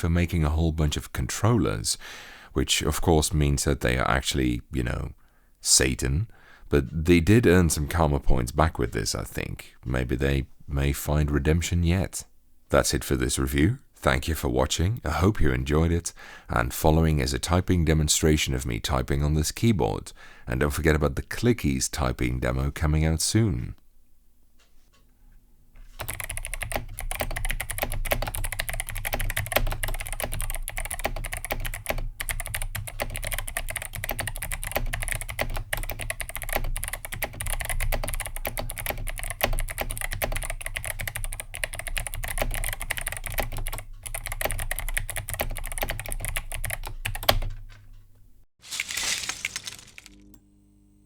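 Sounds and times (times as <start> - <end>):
typing on mechanical keyboard: 26.0 - 47.7.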